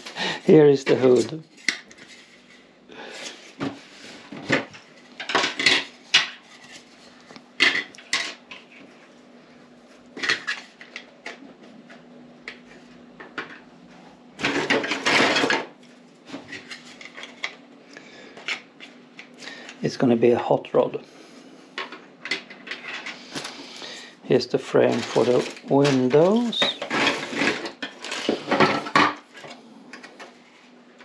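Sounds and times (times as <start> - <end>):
plastic parts clacking and rattling: 4.4 - 6.8, 21.8 - 23.4, 24.8 - 30.2.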